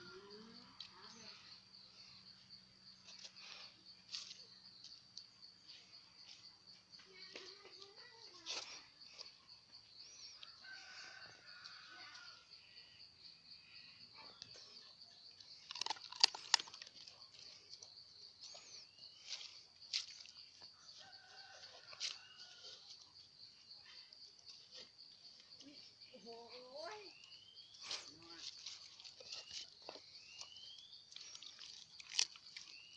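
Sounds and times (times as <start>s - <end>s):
rooster crowing: 10.4s - 12.5s, 20.8s - 22.9s.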